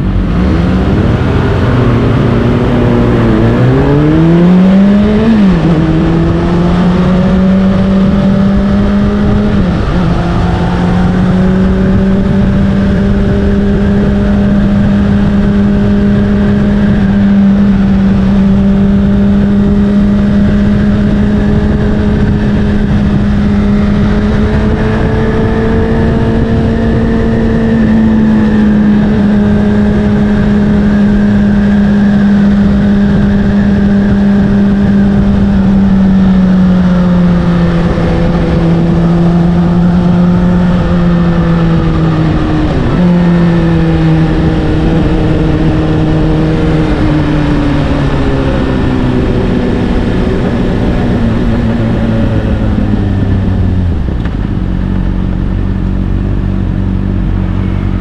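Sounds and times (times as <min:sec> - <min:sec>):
motorcycle engine cruising: 0:00.0 - 0:58.0.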